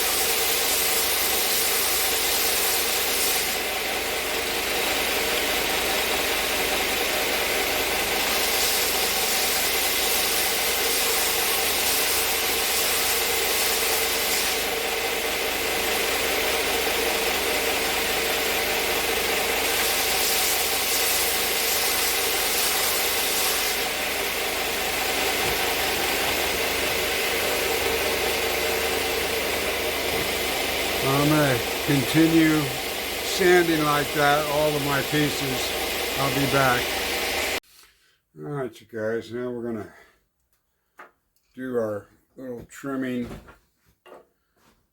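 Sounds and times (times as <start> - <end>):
wood rasping on sanding belt: 0.0 - 3.7, 8.0 - 14.8, 17.5 - 37.6
sander motor humming: 14.6 - 37.6.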